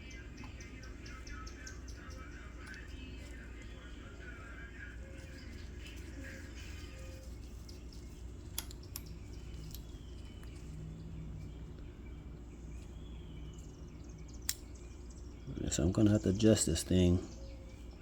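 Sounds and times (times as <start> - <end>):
faint bird chirps: 0.0 - 18.0
outdoor background noise: 0.0 - 18.0
small parts clicking: 8.5 - 10.5.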